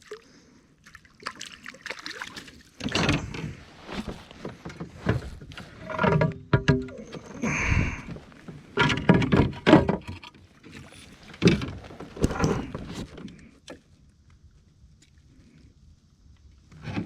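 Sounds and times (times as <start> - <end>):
gear knocking against kayak: 11.2 - 13.4.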